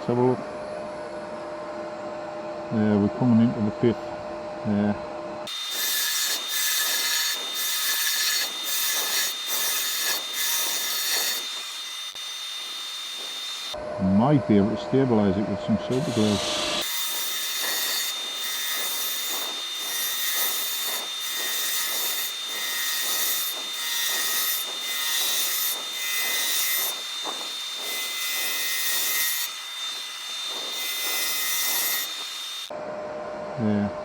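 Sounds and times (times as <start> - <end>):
lathe high whine: 0.2 - 33.4
tool rasping on spinning wood: 5.5 - 13.8, 15.9 - 32.7.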